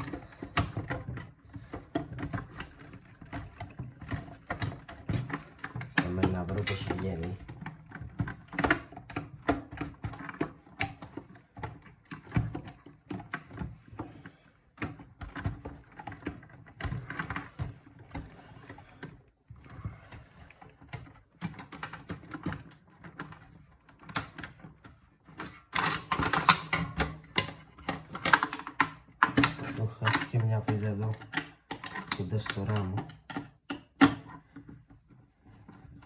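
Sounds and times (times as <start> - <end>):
tools clicking on metal case: 20.8 - 34.8.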